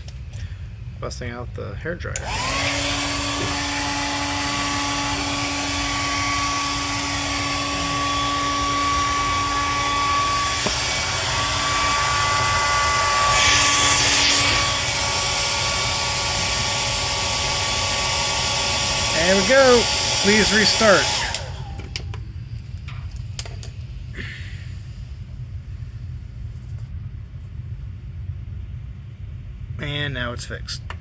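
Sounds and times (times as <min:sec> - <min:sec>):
hair dryer whine and hum: 0:02.2 - 0:24.4.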